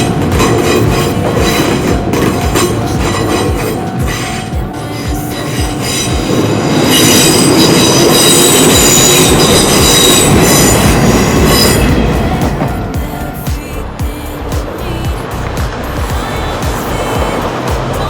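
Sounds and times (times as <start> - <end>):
train wheels knocking over rail joints: 0.0 - 13.7
high wheel squeal: 0.0 - 13.8.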